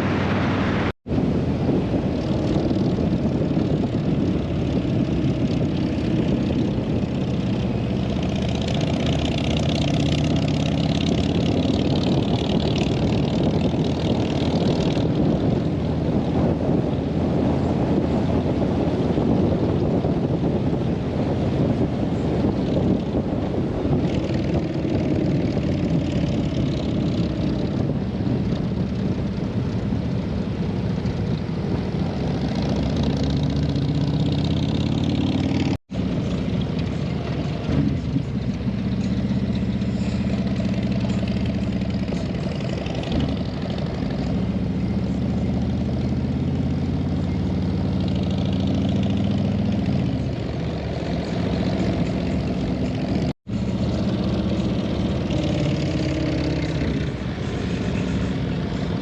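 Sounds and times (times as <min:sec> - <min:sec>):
wind rushing over microphone: 0:00.0 - 0:59.0
motorcycle engine under way: 0:01.7 - 0:59.0.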